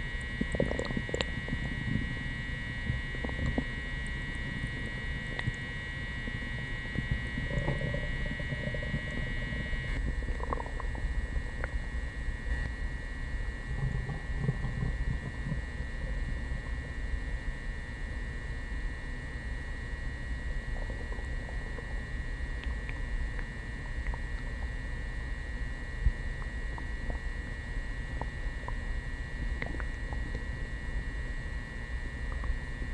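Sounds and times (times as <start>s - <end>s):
stomach gurgling and rumbling: 0.0s - 32.9s.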